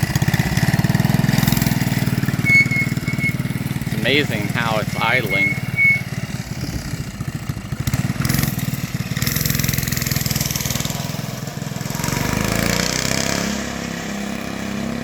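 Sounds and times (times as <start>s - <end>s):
minibike engine revving: 0.0s - 15.0s.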